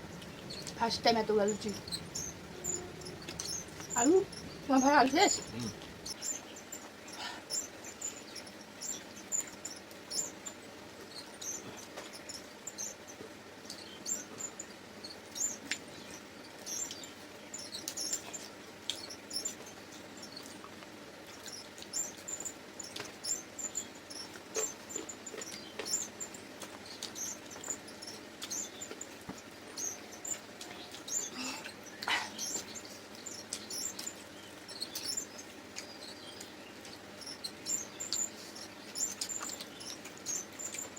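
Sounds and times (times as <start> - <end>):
people chewing and lip-smacking: 26.5 - 29.4.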